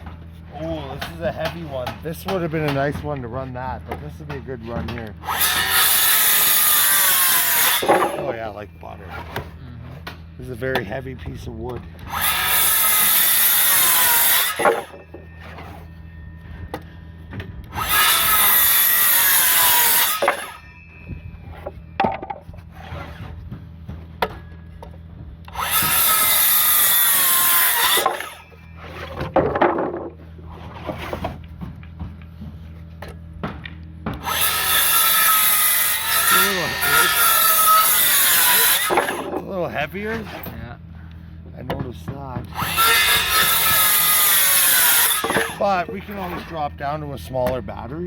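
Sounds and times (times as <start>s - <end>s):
knocks of wood being handled: 1.0s - 5.2s, 41.6s - 43.6s
circular saw cutting wood: 4.2s - 16.2s, 17.6s - 21.9s, 22.5s - 23.4s, 25.5s - 29.4s, 34.2s - 40.7s, 42.4s - 47.6s.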